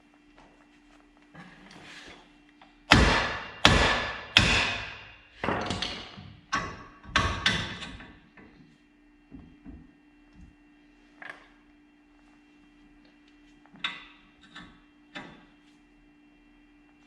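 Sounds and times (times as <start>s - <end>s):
hammer striking metal: 2.9s - 6.1s.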